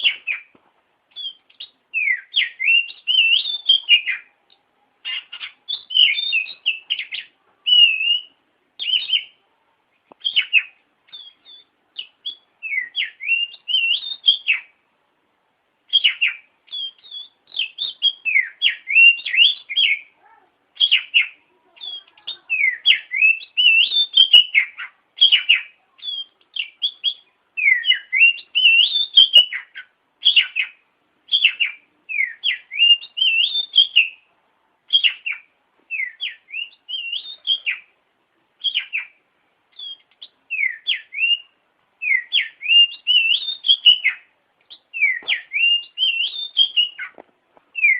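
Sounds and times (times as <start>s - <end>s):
bird singing whistled notes: 0.0s - 0.5s, 1.1s - 9.4s, 10.2s - 14.8s, 15.9s - 20.2s, 20.8s - 34.3s, 34.9s - 38.0s, 38.6s - 47.9s.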